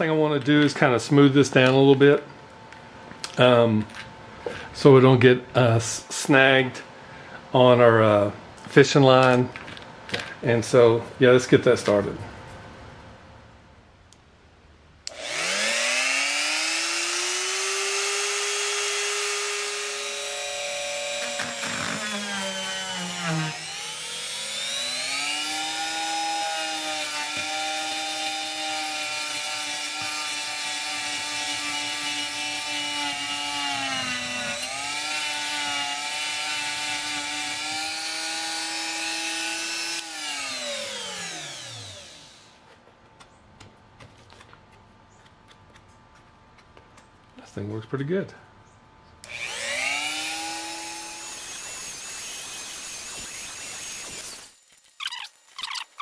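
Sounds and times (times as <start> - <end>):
electric rotary tool sanding plastic: 15.1 - 42.6, 49.2 - 56.0.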